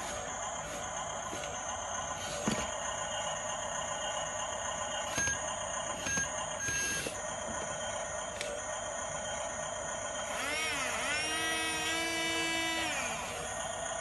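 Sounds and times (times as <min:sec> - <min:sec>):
small electric motors whining: 0:05.0 - 0:14.0.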